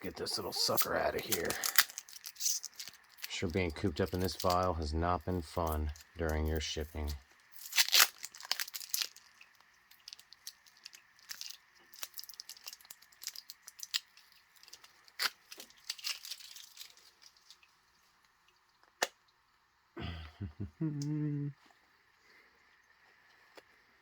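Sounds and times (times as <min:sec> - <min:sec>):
plastic packing crinkling and tearing: 0:00.0 - 0:17.7.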